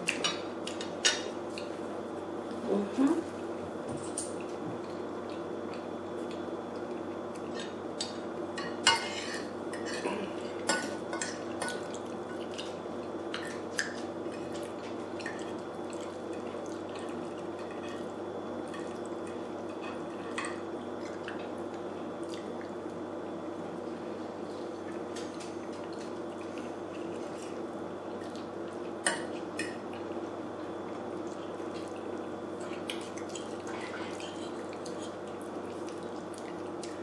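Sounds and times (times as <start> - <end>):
steady low hum: 0.0 - 37.0
wet chewing and mouth smacks: 30.9 - 37.0.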